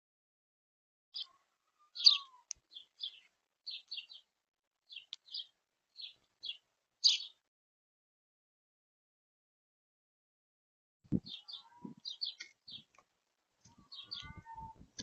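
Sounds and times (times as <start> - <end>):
small birds chirping: 1.2 - 7.4, 11.1 - 15.0.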